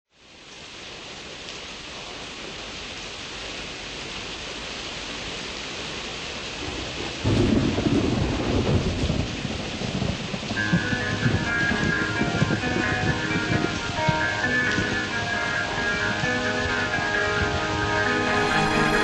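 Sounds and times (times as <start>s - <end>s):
steady rain falling: 0.1s - 19.0s
low rumble of thunder: 6.6s - 18.0s.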